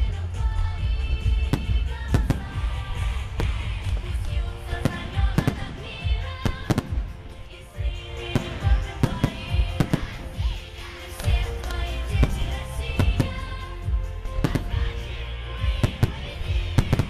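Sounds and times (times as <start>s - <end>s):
music playing: 0.0s - 17.0s
fireworks bangs: 0.6s - 17.0s.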